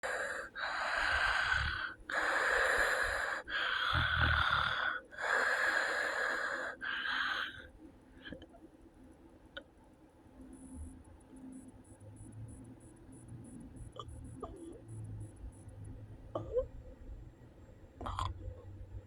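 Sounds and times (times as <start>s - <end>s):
person snoring: 0.0s - 7.5s.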